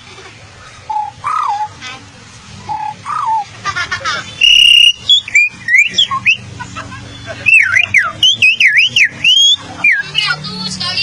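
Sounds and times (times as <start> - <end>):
child imitating bird calls: 0.9 - 2.0, 4.4 - 6.4
shrill held whistle: 4.4 - 6.4, 7.5 - 10.2.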